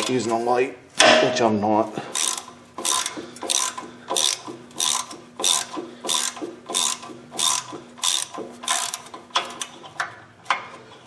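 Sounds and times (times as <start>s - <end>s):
ratchet clicking: 2.1s - 10.6s.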